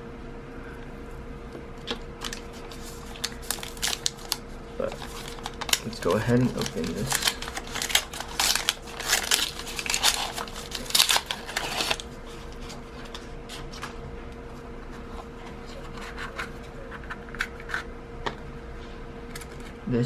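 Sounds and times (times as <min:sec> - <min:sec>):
packaging rustling and scraping: 0:01.8 - 0:17.9.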